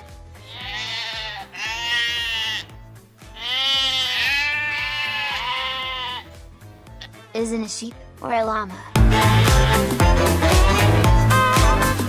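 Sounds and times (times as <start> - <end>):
quiet background music: 0.0 - 12.0
sheep bleating: 0.4 - 6.4, 9.0 - 11.7.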